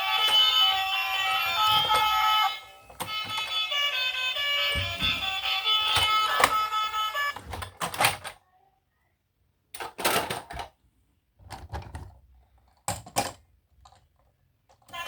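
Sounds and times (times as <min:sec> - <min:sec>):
plastic clicking and clattering: 0:04.8 - 0:06.8, 0:07.4 - 0:08.4, 0:09.7 - 0:10.8, 0:11.4 - 0:15.0.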